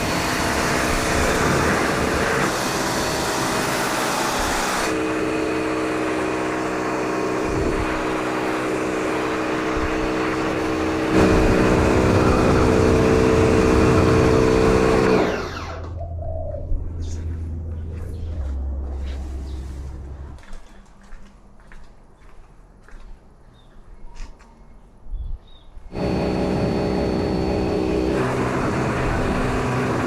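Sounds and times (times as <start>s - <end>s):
pressure washer motor hum: 0.0s - 16.0s, 25.9s - 30.0s.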